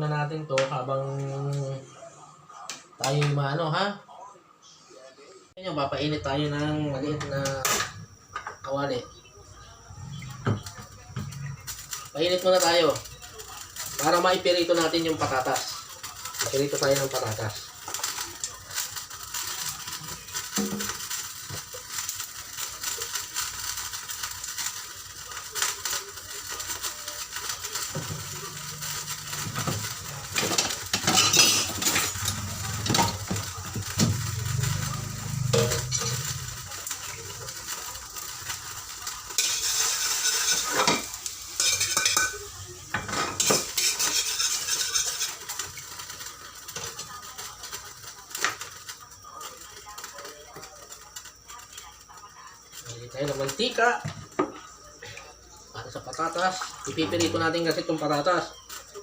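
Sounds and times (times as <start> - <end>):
food sizzling: 5.7 - 59.0
metal cookware clinking: 27.7 - 34.3, 35.5 - 47.1.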